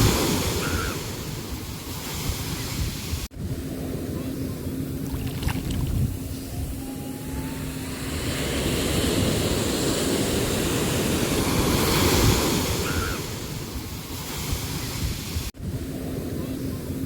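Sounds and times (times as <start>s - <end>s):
sea waves surging: 0.0s - 4.1s, 7.2s - 16.3s.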